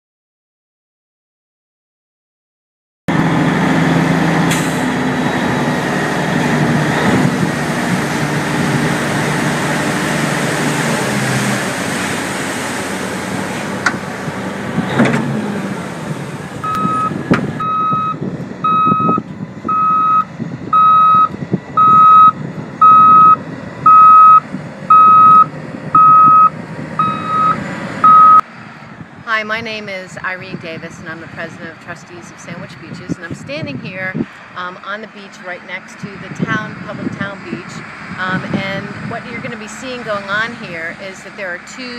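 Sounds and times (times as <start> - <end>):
heavy diesel engine running: 3.1 - 41.9
backup alarm beeping: 16.6 - 28.4.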